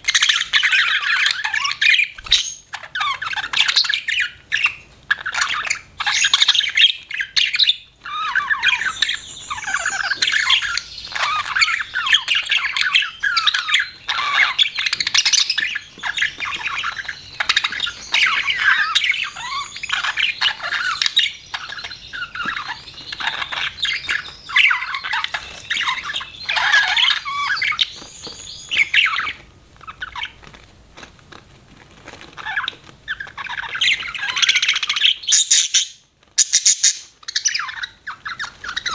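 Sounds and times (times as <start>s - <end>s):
budgerigars chirping and warbling: 0.0s - 30.6s, 32.3s - 38.9s
budgerigar squawks: 33.4s - 38.9s.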